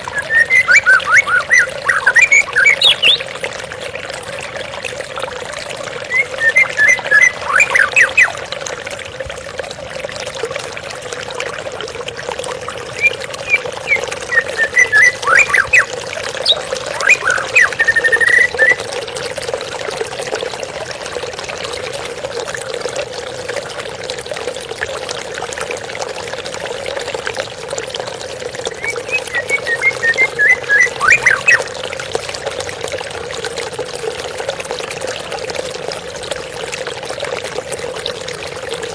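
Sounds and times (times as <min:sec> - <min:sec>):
bird chirping calls: 0:00.0 - 0:03.2, 0:06.1 - 0:08.3, 0:13.0 - 0:18.8, 0:28.8 - 0:31.6
water flowing: 0:00.0 - 0:38.9.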